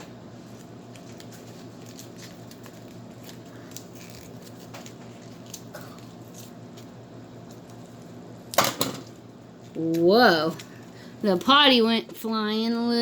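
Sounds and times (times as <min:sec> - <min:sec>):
low steady hum: 0:00.0 - 0:13.0
packaging crinkling: 0:00.4 - 0:07.8.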